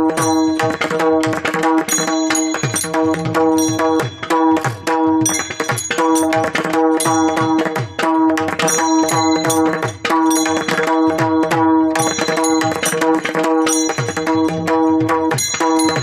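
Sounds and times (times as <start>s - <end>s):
fast rhythmic drumming: 0.0s - 16.0s
bright ringing strikes: 5.3s - 7.6s.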